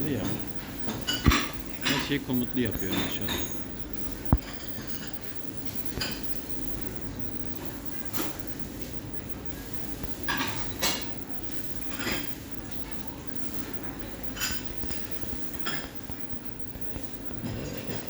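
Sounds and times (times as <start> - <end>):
steady low hum: 0.0 - 18.0
dishes and cutlery clinking: 0.3 - 3.7.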